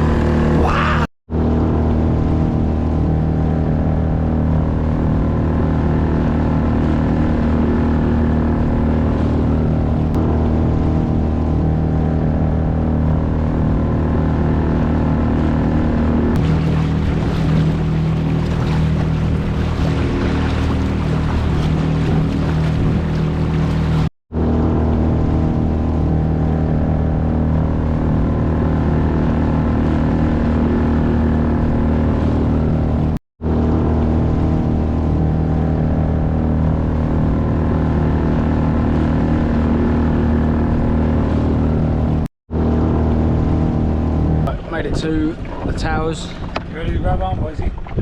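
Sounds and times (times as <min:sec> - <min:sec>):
outboard motor running: 0:00.0 - 0:48.0
water noise: 0:00.0 - 0:48.0
wind noise: 0:16.1 - 0:24.1, 0:43.0 - 0:48.0.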